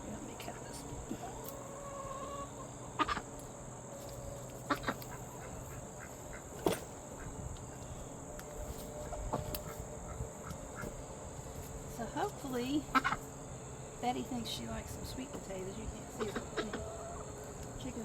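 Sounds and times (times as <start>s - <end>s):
chickens clucking: 0.1s - 18.0s.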